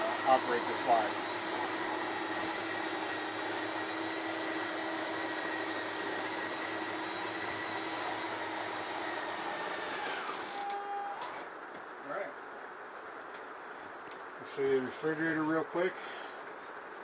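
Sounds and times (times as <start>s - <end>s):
electric motors whining: 0.0s - 11.6s.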